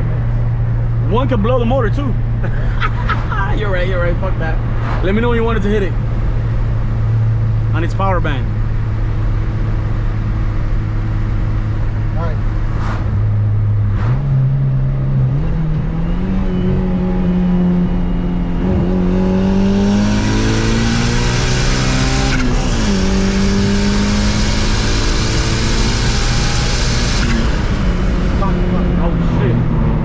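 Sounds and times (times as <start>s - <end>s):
turbocharged engine revving: 11.4s - 30.0s.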